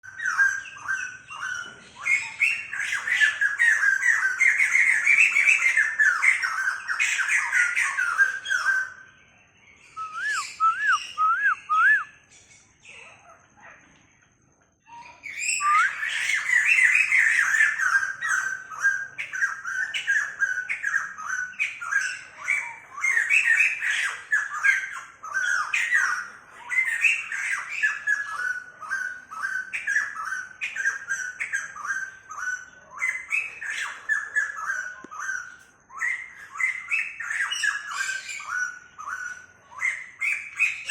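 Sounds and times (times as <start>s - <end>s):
bird whistles: 0.0s - 9.1s, 9.7s - 13.7s, 14.8s - 40.9s
bird chattering babble: 0.0s - 40.9s.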